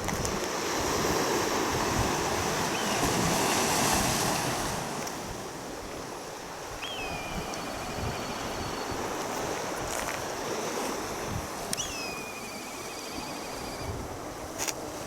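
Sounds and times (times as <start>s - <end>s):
sea waves washing on shore: 0.0s - 15.0s
wind on microphone: 0.0s - 15.0s
bird whistled call: 2.7s - 3.2s, 6.8s - 9.1s, 11.8s - 14.0s.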